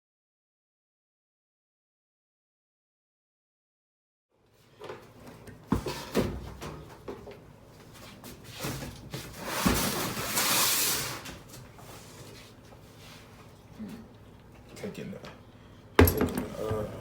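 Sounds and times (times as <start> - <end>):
objects knocking and clunking: 16.0 - 17.0.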